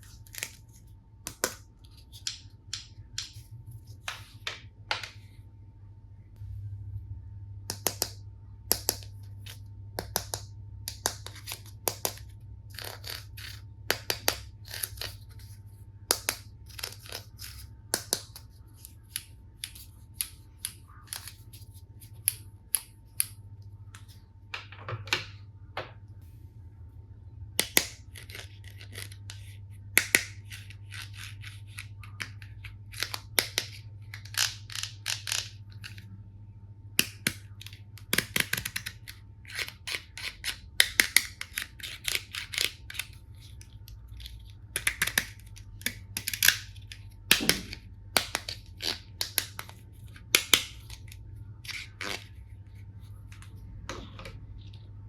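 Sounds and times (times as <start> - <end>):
faint low hum: 0.0 - 55.0
plastic toy pieces clicking: 44.7 - 46.7.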